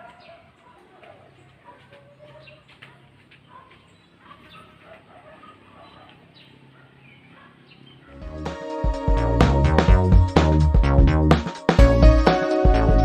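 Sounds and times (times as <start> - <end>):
loud music: 8.2 - 13.0.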